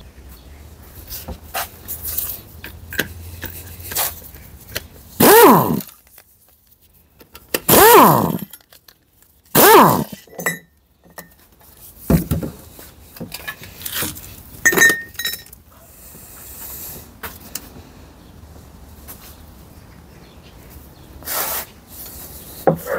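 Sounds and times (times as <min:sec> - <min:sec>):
short rising and falling sounds: 0:05.2 - 0:05.8, 0:07.7 - 0:08.4, 0:09.6 - 0:10.2
metal tools clinking and knocking: 0:10.1 - 0:11.4, 0:14.6 - 0:15.6.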